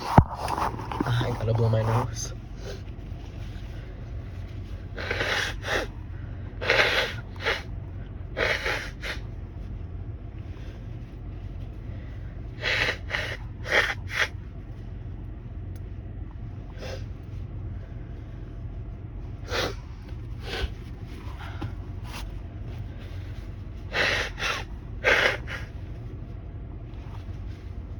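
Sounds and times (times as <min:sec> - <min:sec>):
person blowing nose: 0:04.9 - 0:05.9, 0:06.6 - 0:07.7, 0:08.4 - 0:09.2, 0:12.6 - 0:14.3, 0:23.9 - 0:25.8.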